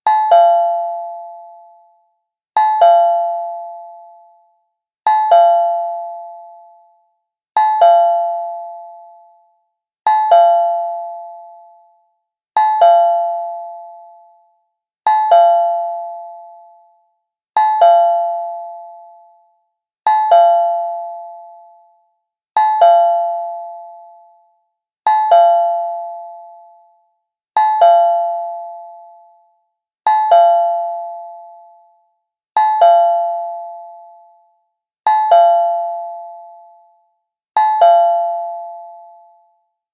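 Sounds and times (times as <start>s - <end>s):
cartoon doorbell chime: 37.6s - 39.2s.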